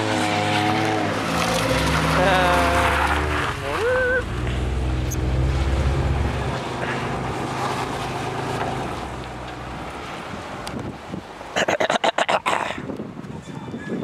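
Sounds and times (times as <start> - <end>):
vehicle engine drone: 0.0 - 11.2
road and wind noise: 0.0 - 14.0.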